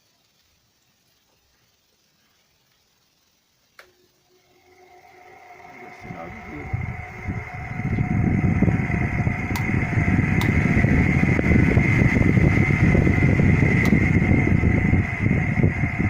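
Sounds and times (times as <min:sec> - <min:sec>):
fan rattling rumble and whine: 0:03.8 - 0:16.0.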